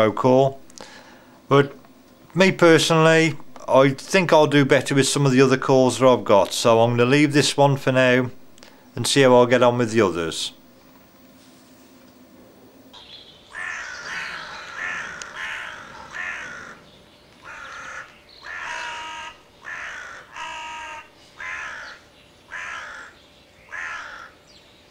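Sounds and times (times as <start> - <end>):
crow cawing: 13.5 - 24.4.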